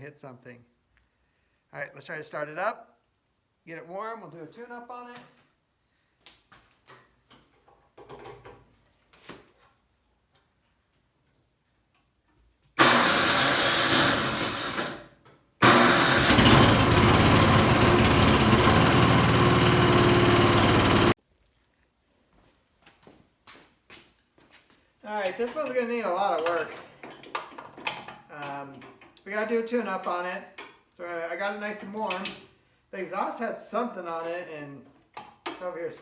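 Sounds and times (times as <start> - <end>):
snowblower engine starting and running: 12.8 - 21.2.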